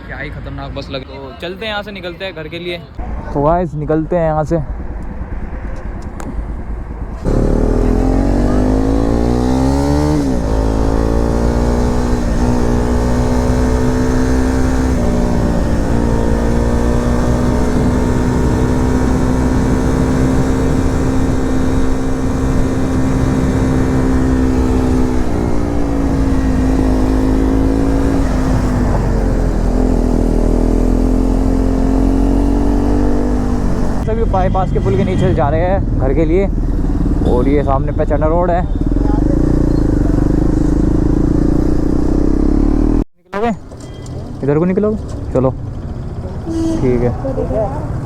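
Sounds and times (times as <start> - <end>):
motorcycle engine revving: 4.6 - 48.0.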